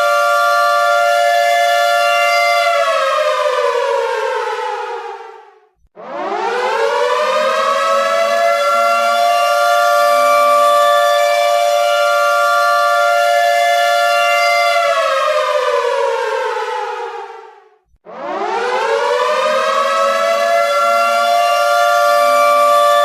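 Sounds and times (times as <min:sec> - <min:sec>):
air raid siren wailing: 0:00.0 - 0:23.0.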